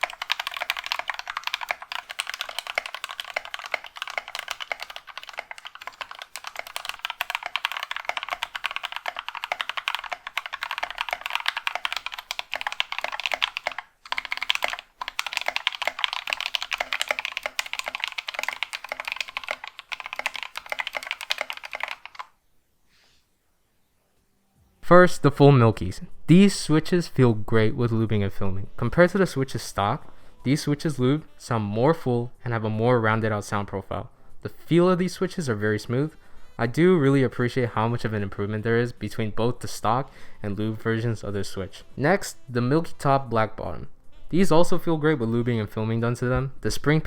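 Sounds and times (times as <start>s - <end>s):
mechanical keyboard typing: 0.0s - 22.4s.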